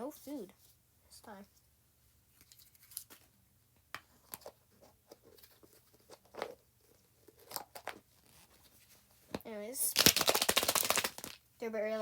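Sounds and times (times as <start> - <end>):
plastic toy pieces clicking: 10.0 - 11.4.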